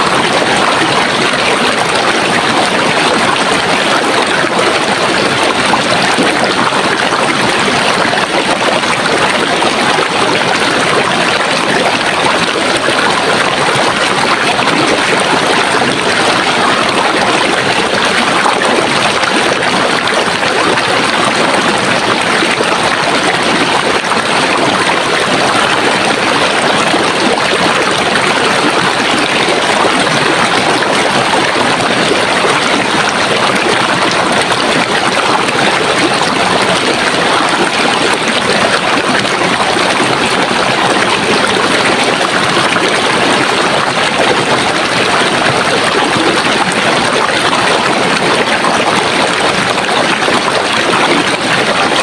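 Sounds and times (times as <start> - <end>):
stream water rushing: 0.0 - 52.0.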